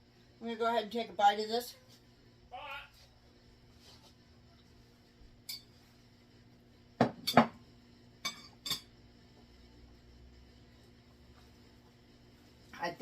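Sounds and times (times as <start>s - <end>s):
dishes and cutlery clinking: 5.4s - 5.8s, 7.0s - 7.6s, 8.2s - 8.9s.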